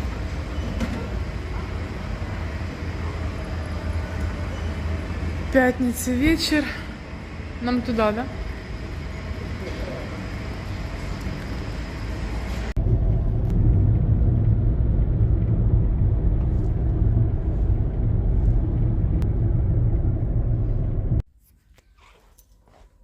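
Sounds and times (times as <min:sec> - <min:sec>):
car road and engine noise: 0:08.4 - 0:21.2
deep rumble: 0:11.9 - 0:21.2.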